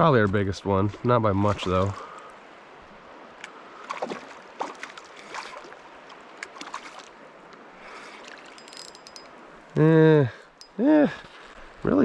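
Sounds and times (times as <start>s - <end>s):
creek water running: 0.0s - 12.0s
brief splashes: 3.8s - 7.1s.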